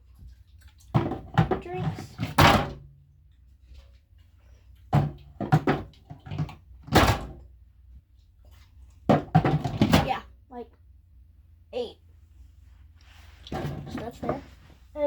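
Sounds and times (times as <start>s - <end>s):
drinks knocking into fridge organizer: 9.1s - 10.1s.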